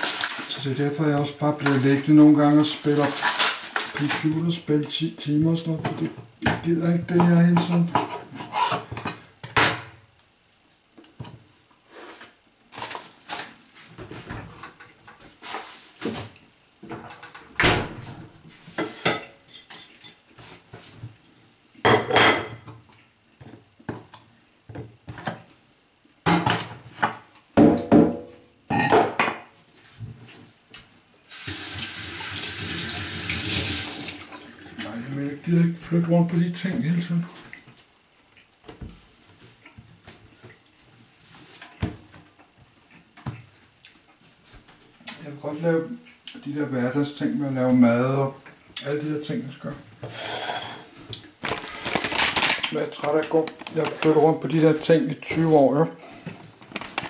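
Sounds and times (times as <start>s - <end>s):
tap water running into sink: 31.3s - 34.6s.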